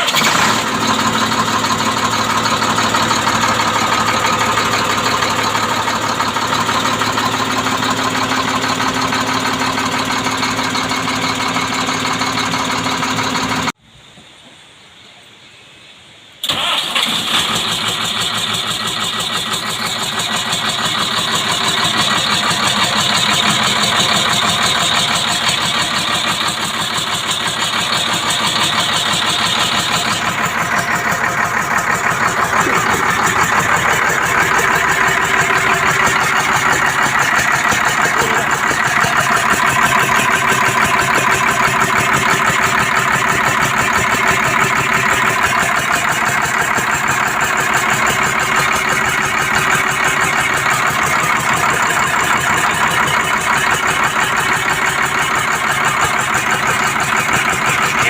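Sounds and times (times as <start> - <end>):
diesel engine clattering: 0.0 - 13.8, 16.4 - 58.0.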